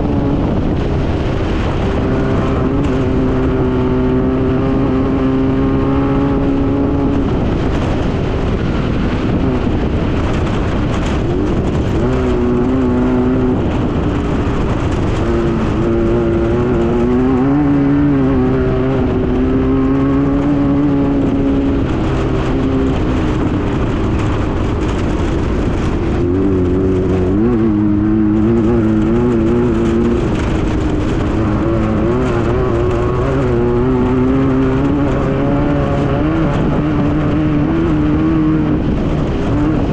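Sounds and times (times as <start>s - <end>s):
race buggy engine running hard: 0.0s - 39.9s
steady rush of noise: 0.0s - 39.9s.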